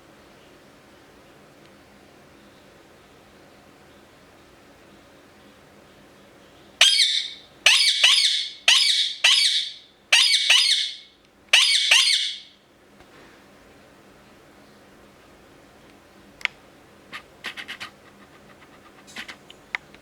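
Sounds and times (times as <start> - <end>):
parakeet screeching: 6.8 - 12.5.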